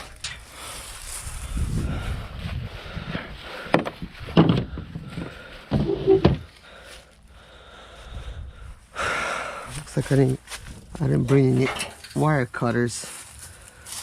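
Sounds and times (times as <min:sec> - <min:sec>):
tools knocking and clacking: 0:11.6 - 0:12.2.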